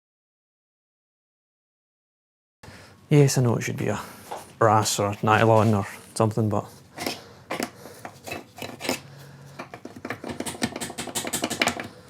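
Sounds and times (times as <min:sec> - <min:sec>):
tool scraping metal: 0:06.9 - 0:11.9
hammer tapping on metal: 0:09.6 - 0:11.9.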